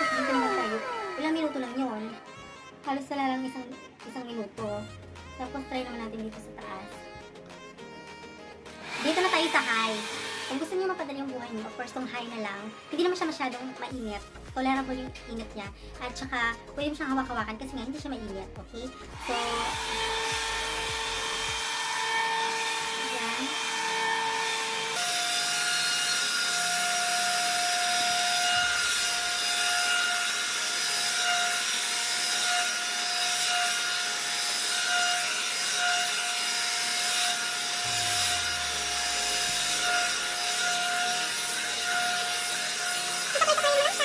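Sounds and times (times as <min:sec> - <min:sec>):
hair dryer blowing with motor whine: 0:00.0 - 0:02.8, 0:08.2 - 0:13.9, 0:18.8 - 0:44.0.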